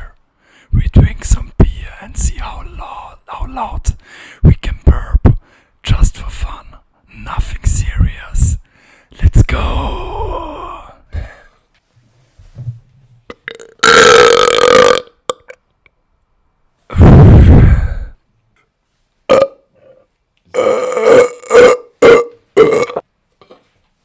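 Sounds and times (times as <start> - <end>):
person burping: 13.3 - 15.6, 19.3 - 23.6.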